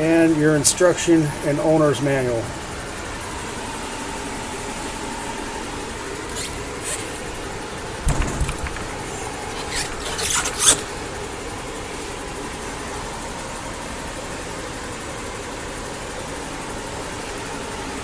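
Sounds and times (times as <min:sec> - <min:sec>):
steady background hum: 0:00.0 - 0:18.0
handling rustling and scraping: 0:06.3 - 0:10.9.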